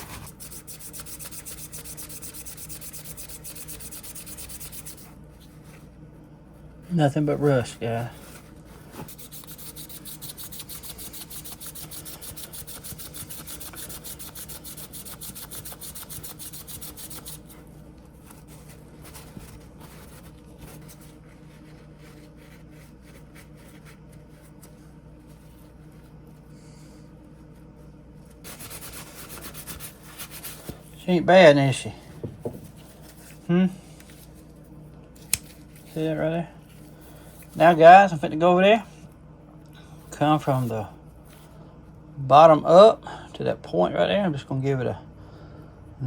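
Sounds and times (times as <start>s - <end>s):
abrasive rubbing on knife blade: 0.0s - 5.1s, 9.0s - 17.5s.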